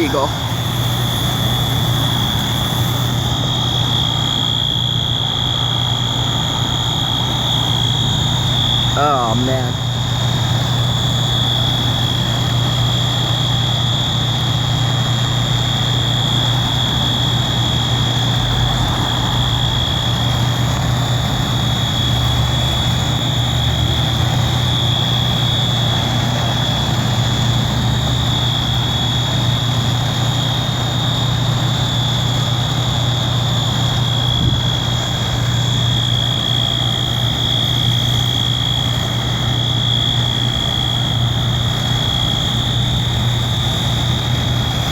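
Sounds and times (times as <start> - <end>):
fire alarm horn high-pitched tone: 0.0 - 15.2
fire engines idling: 0.0 - 44.9.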